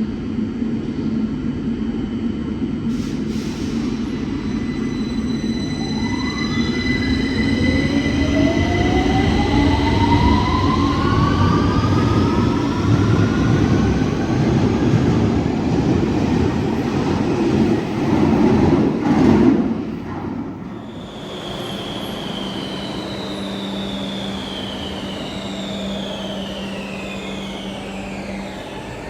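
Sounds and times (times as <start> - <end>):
train motors whining: 21.0 - 29.0.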